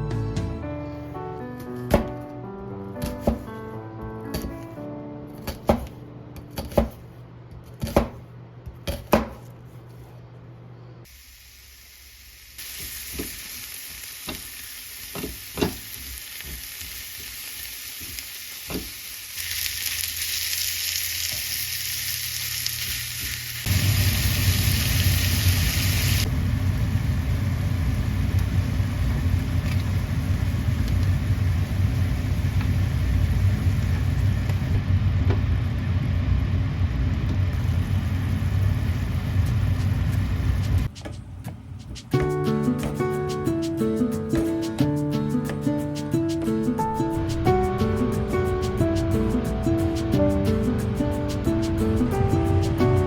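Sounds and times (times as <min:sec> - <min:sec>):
food sizzling in a frying pan: 0:11.1 - 0:40.8
loud low rumble: 0:26.3 - 0:40.9.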